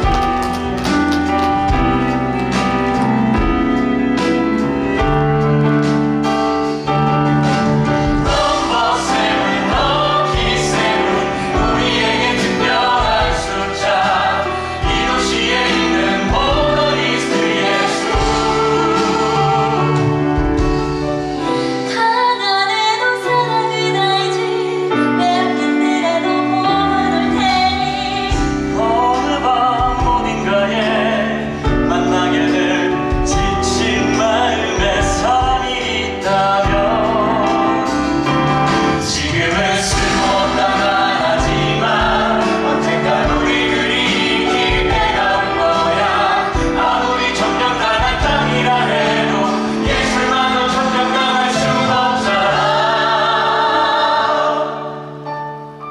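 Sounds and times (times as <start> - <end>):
bass and drums: 0.0 - 21.4, 27.4 - 53.2
band playing: 0.0 - 24.2, 25.0 - 55.8
cast singing together: 8.1 - 20.5, 39.1 - 55.2.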